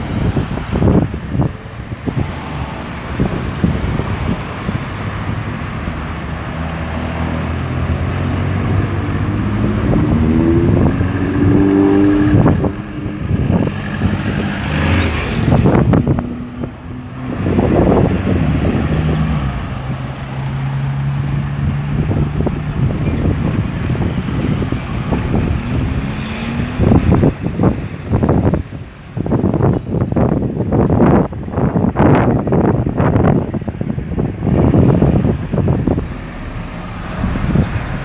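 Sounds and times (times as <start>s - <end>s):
vehicles passing: 0.0s - 38.0s
engines rising in pitch: 34.4s - 38.0s.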